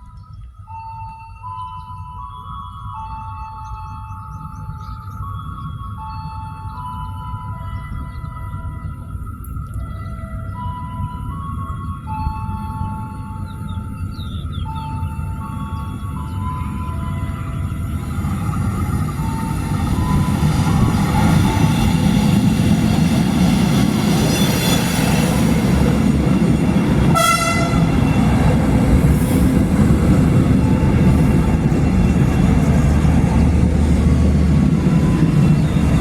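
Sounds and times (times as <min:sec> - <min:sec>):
train rumbling: 0:00.0 - 0:36.0
train horn blast: 0:27.0 - 0:28.6.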